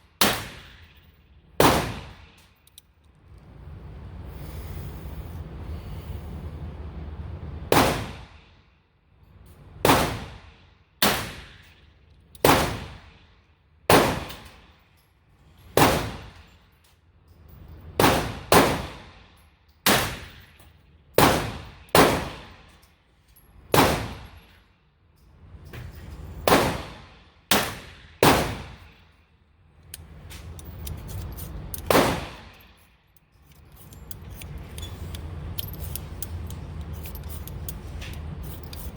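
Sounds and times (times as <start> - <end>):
gunshots ringing indoors: 1.6 - 2.4, 7.7 - 8.5, 13.9 - 14.6, 15.8 - 16.5, 18.0 - 19.2, 21.2 - 22.7, 23.7 - 24.3, 26.4 - 29.0, 31.8 - 32.6.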